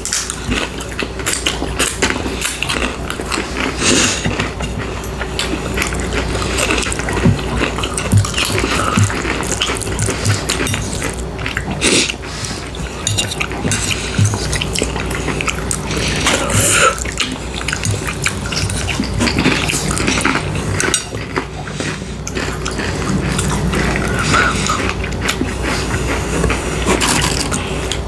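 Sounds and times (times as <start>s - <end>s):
wet chewing and smacking: 0.0s - 28.0s
cutlery clinking on dishes: 12.8s - 15.0s, 17.8s - 21.4s.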